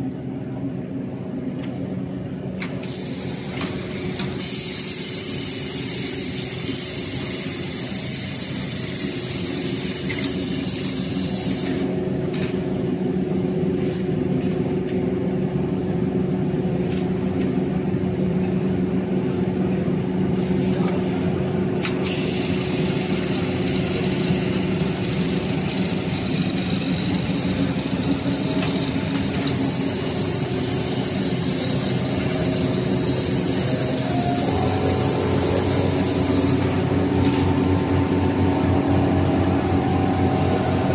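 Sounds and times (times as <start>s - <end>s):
sewing machine humming: 22.0s - 40.9s.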